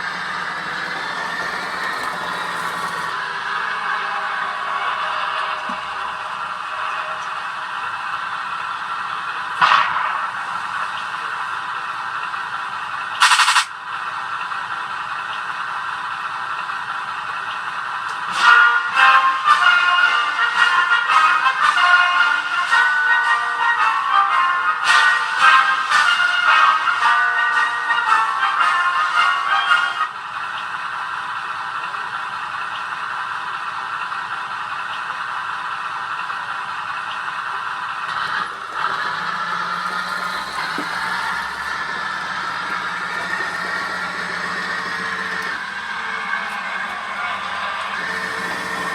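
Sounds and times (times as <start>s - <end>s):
model tank tracks clattering: 0.0s - 3.6s, 31.8s - 48.9s
tank engine sound: 0.0s - 48.9s
short loud noise burst: 13.2s - 13.7s.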